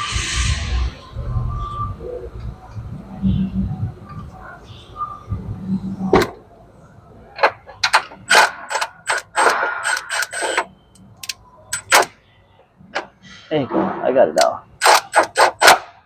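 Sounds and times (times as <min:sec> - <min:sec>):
sharp metallic knocks: 0:13.7 - 0:16.0.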